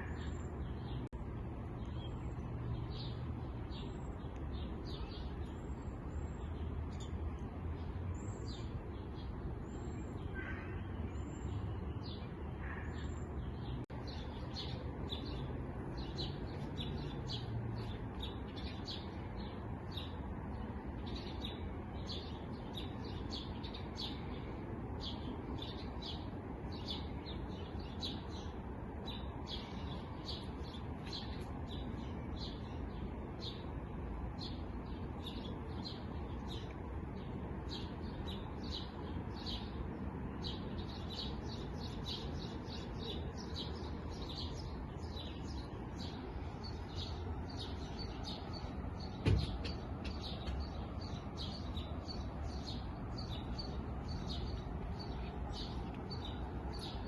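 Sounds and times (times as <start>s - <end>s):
songbirds chirping: 0.0s - 57.0s
thump: 49.2s - 50.2s.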